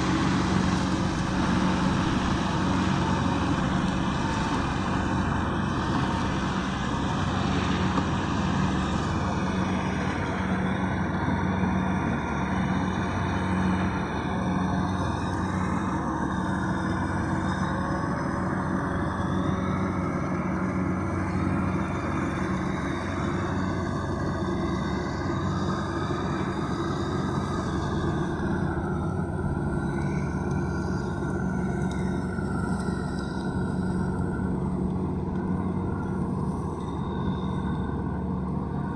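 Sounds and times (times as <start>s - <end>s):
combine harvester engine droning: 0.0s - 38.9s.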